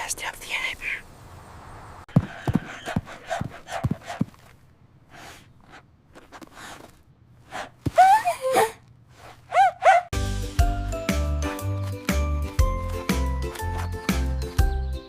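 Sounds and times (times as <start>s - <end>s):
breathy gasps and sniffs: 5.1s - 6.9s.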